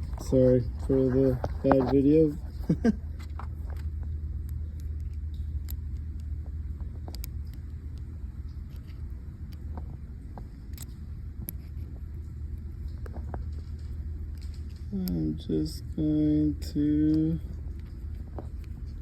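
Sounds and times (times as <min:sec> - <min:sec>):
faint clicks and taps: 0:00.0 - 0:15.2
steady low rumble: 0:00.0 - 0:19.0.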